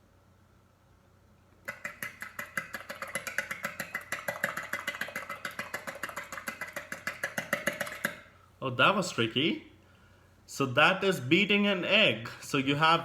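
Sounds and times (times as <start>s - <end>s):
beater clicking against bowl: 1.6s - 8.3s.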